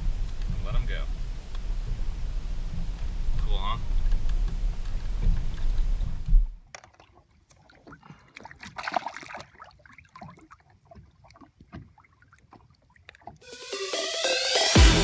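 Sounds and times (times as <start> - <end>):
water splashing and lapping: 2.6 - 14.1.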